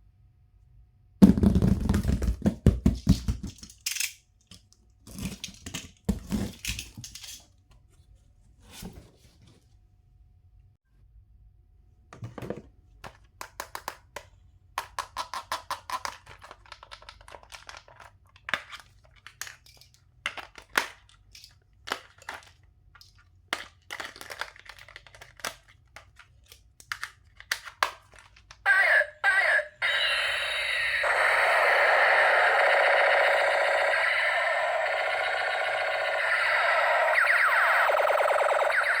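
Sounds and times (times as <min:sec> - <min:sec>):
loud steady buzzing: 0:29.8 - 0:39.0.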